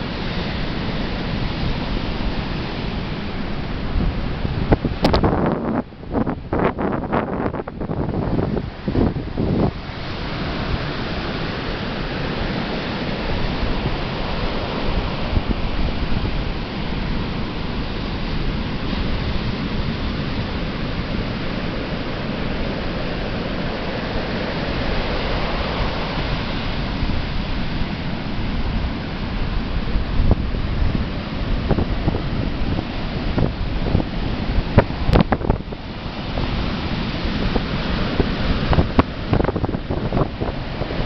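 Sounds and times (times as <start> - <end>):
surf breaking on beach: 0.0 - 41.0.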